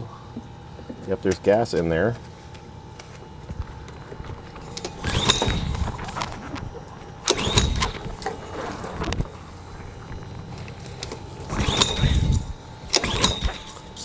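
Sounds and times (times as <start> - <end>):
engine cranking without firing: 0.0 - 14.0.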